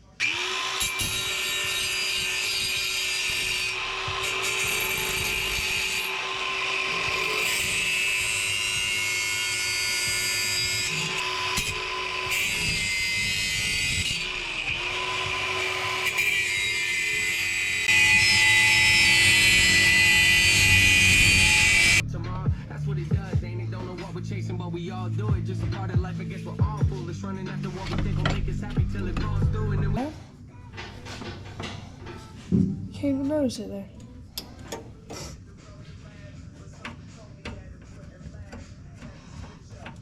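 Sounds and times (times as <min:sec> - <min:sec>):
angle grinder grinding metal: 0:00.0 - 0:22.1, 0:25.7 - 0:32.6.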